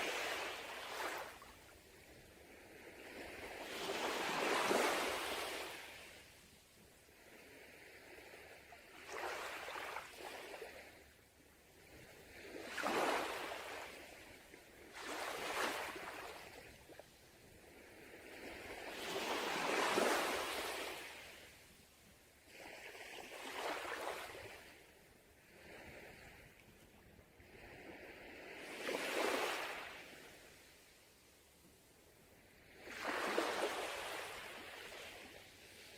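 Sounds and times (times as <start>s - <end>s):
sea waves breaking on beach: 0.0s - 1.6s, 2.5s - 6.3s, 12.2s - 16.9s, 17.7s - 21.6s, 22.5s - 24.8s, 27.4s - 30.7s, 32.6s - 35.9s.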